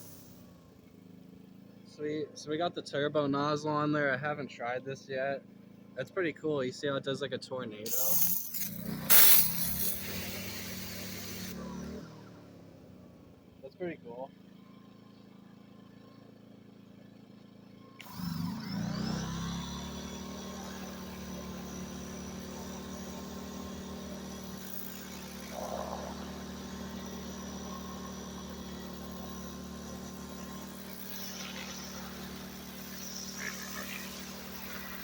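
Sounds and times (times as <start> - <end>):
pressure washer motor humming: 0.0 - 1.2, 7.9 - 13.4, 18.0 - 35.0
water spray hissing: 7.9 - 11.6.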